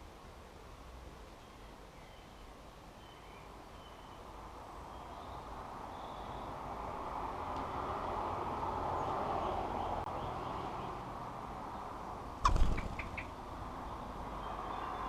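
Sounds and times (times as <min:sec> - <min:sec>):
bird landing bump: 0:12.4 - 0:13.3
wings fluttering: 0:12.4 - 0:13.5.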